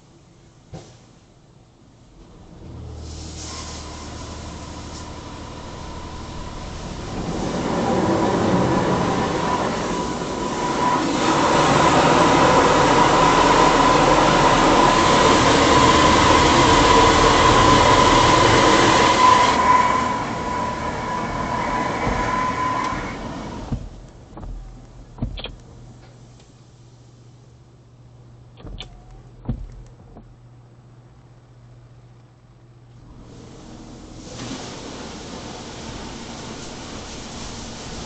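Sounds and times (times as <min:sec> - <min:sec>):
steady machine whine: 0:02.3 - 0:26.2
spray rushing against car: 0:03.0 - 0:24.6, 0:33.2 - 0:38.0
clicks: 0:24.1 - 0:26.5, 0:28.5 - 0:30.4.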